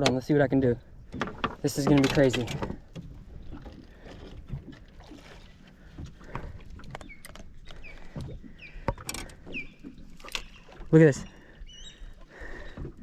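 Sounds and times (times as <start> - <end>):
fishing gear knocks and clicks: 1.1 - 4.9, 6.1 - 10.6.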